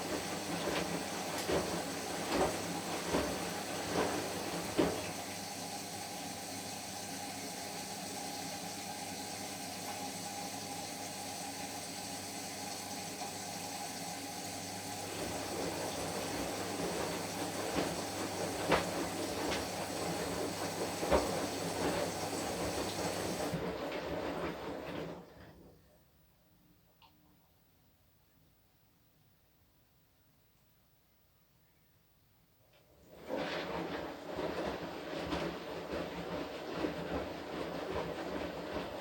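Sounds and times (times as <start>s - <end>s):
water swishing in drum: 0.0s - 5.8s, 14.8s - 25.3s, 33.1s - 39.0s
washing machine motor hum: 0.0s - 25.9s, 32.9s - 39.0s.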